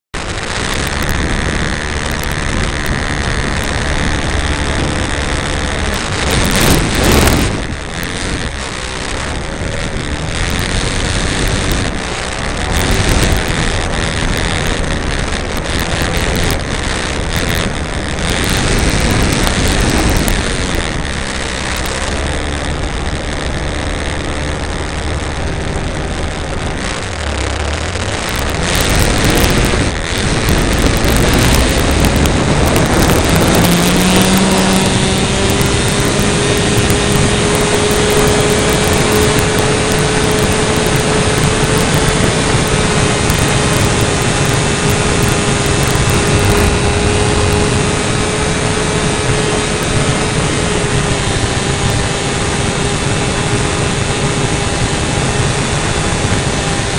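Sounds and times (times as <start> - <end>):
wind rushing over microphone: 0.1 - 56.9
model plane motor and propeller: 0.2 - 56.9.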